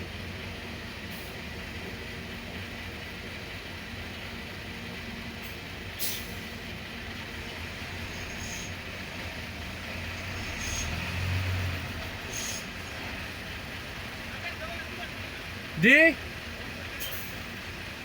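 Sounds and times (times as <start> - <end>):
excavator diesel engine running: 0.0 - 18.0.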